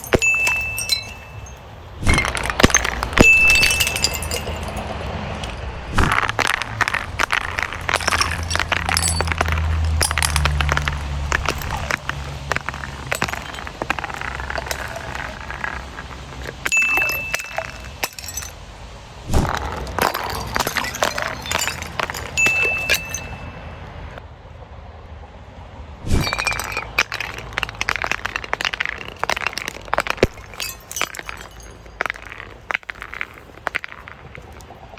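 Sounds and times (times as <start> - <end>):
glass bottles clinking: 0.0 - 18.6, 19.4 - 23.6, 26.2 - 34.7
glass bottles smashing: 0.0 - 18.6, 19.2 - 23.5, 26.1 - 34.7.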